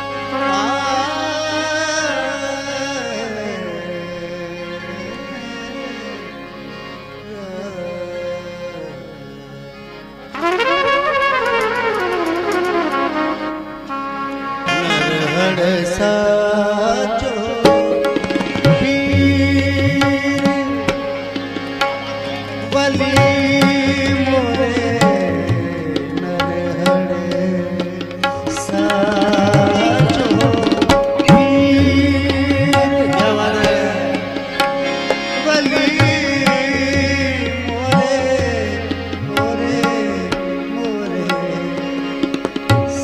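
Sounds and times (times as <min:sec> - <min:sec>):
sustained melodic music: 0:00.0 - 0:43.0
tabla drumming: 0:17.5 - 0:43.0.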